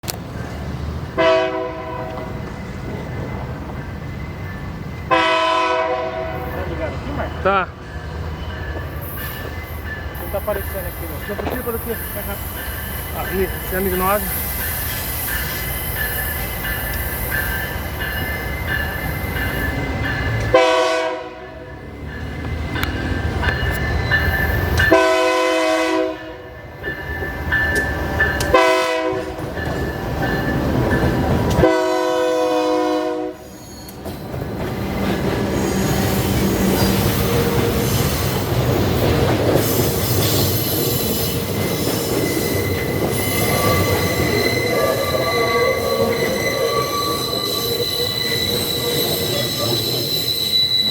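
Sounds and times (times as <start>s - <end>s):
locomotive horn: 1.2s - 2.4s, 5.1s - 6.6s, 20.5s - 21.6s, 24.9s - 26.5s, 28.4s - 29.4s, 31.6s - 33.5s
train wheels squealing and rumbling: 1.9s - 5.6s, 6.2s - 20.8s, 21.4s - 25.4s, 26.4s - 50.9s.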